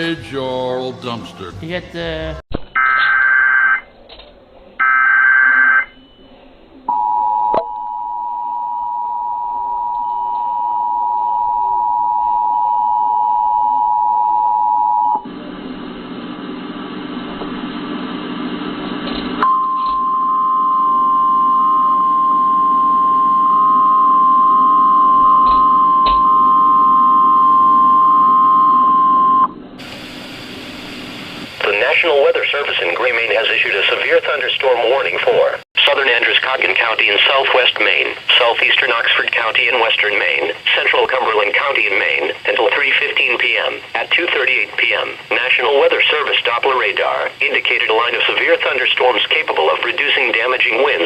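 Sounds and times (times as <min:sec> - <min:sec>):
steady warning alarm tone: 0:06.9 - 0:15.3, 0:19.4 - 0:29.6
radio hiss: 0:29.8 - 0:51.0.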